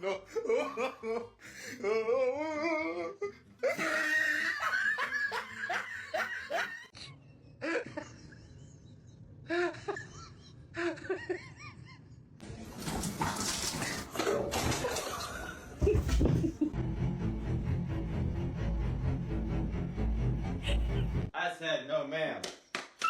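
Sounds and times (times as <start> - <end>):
person laughing hard: 0.0 - 2.8, 3.6 - 6.9.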